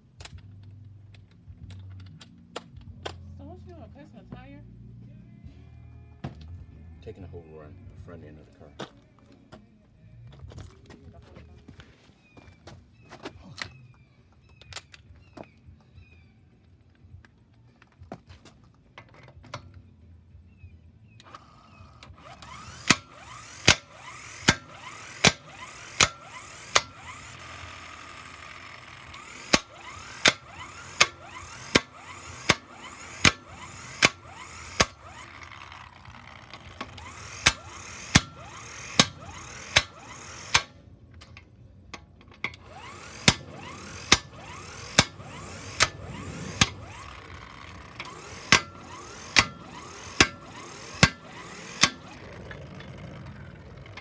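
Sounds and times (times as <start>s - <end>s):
ratchet wrench clicking: 21.2s - 41.4s, 42.0s - 54.0s.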